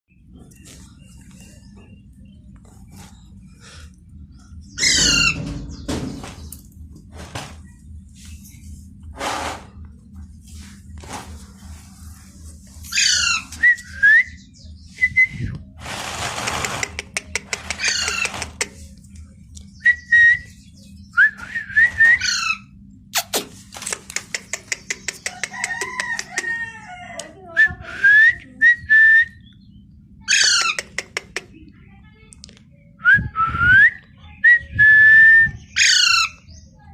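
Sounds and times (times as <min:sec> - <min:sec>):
parrot rapid clicks: 0:16.6 - 0:18.8, 0:23.2 - 0:26.5, 0:30.5 - 0:31.5
parrot whistling and chirping: 0:19.8 - 0:22.7.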